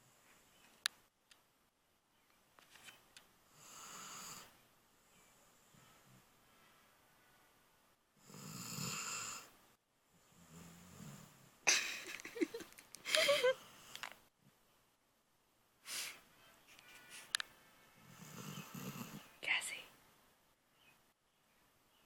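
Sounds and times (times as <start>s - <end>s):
dog snoring with wheeze: 3.5s - 4.5s, 8.2s - 9.5s, 10.2s - 11.5s, 18.1s - 19.3s.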